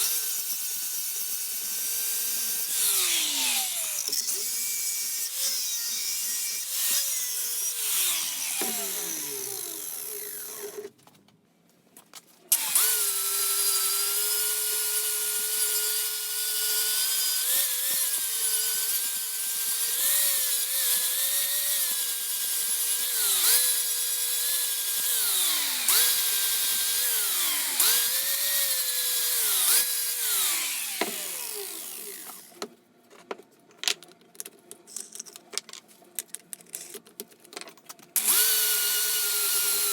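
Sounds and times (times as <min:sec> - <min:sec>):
electric power tool running under load: 0:07.8 - 0:10.9, 0:12.6 - 0:32.5, 0:38.2 - 0:39.9.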